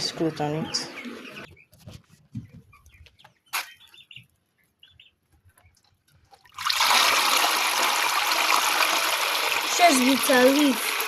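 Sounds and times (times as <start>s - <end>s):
faint bird chirps: 0.7s - 5.9s
water pouring: 6.3s - 11.0s.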